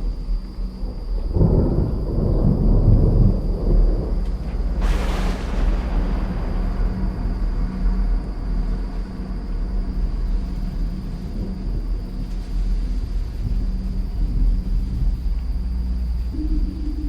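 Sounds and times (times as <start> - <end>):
thunder rumbling: 0.8 - 17.0
hissing burst of noise: 4.8 - 8.3.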